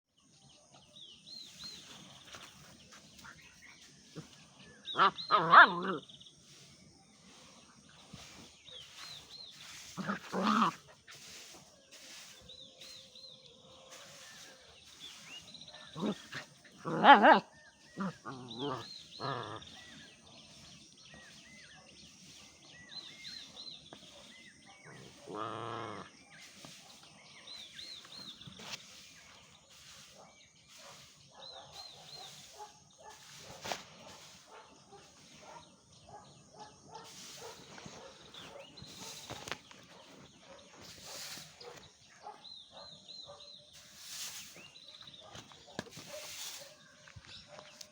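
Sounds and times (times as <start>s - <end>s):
puppy barking: 5.0s - 6.0s, 15.9s - 19.6s, 31.4s - 39.4s.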